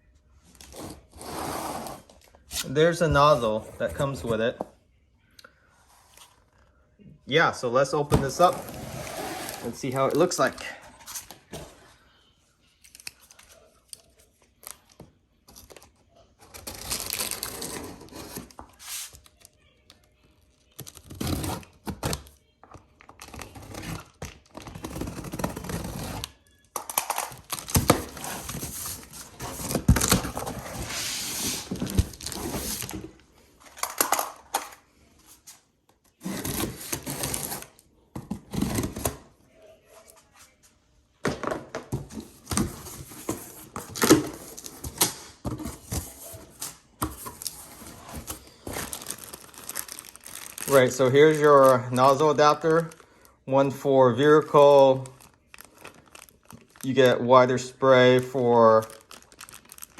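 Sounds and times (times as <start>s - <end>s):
cardboard packaging rustling: 16.4s - 19.4s, 27.1s - 34.2s, 41.9s - 53.1s, 53.7s - 59.9s.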